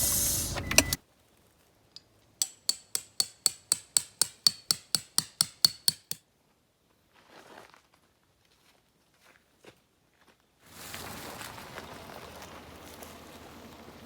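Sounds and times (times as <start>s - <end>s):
hammer striking metal tent peg: 2.4s - 6.2s.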